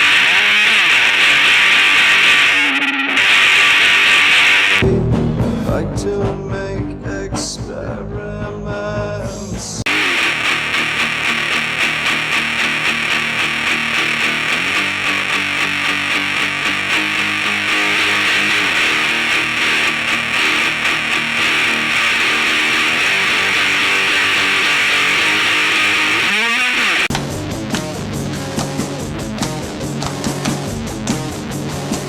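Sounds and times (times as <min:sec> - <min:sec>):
distorted electric guitar chords: 0:00.0 - 0:05.6, 0:09.9 - 0:28.5.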